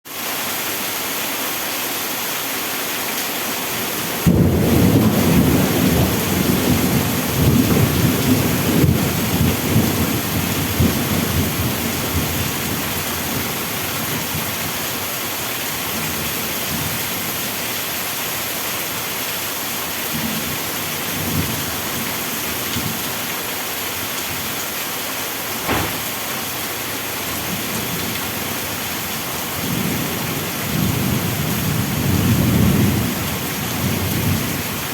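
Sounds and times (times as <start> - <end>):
faint rumble of thunder: 4.2 - 12.4, 25.6 - 28.6, 29.6 - 34.6
heavy rain hissing: 16.2 - 34.9
thunderclap rolling rumble: 25.5 - 28.4.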